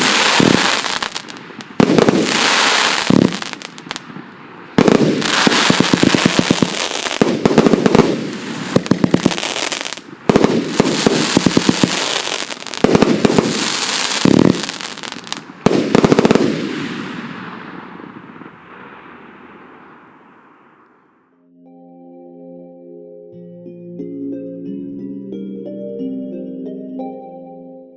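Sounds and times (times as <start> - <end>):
fireworks firing volleys: 0.0 - 4.1, 4.7 - 18.9
fireworks bursting with crackling: 0.0 - 19.6.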